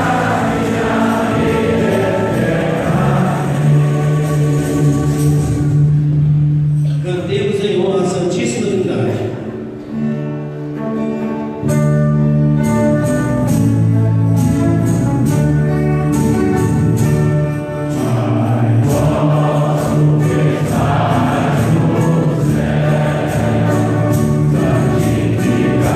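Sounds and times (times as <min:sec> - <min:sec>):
choir singing a hymn: 0:00.0 - 0:06.2, 0:17.9 - 0:25.9
instrumental accompaniment with beat: 0:00.0 - 0:06.9, 0:11.5 - 0:25.9.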